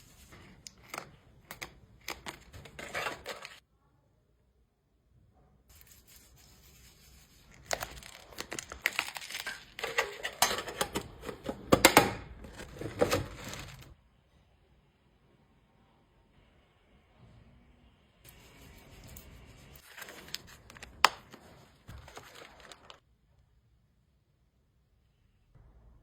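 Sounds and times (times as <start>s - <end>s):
packaging tearing and crinkling: 7.5s - 10.4s, 12.5s - 13.9s, 19.8s - 23.0s.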